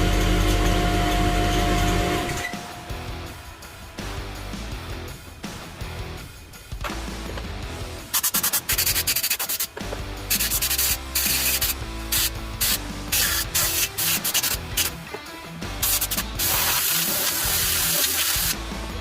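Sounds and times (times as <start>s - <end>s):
background music: 0.0s - 19.0s
compressed air blow gun blasts: 8.0s - 15.1s, 15.7s - 18.6s.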